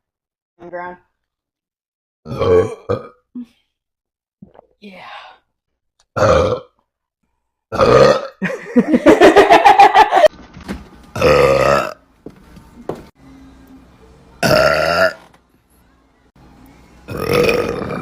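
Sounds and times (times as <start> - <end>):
woman burping loudly: 2.3 - 3.5, 6.2 - 6.8, 7.7 - 8.5, 11.2 - 12.0, 14.4 - 15.3, 17.1 - 18.0.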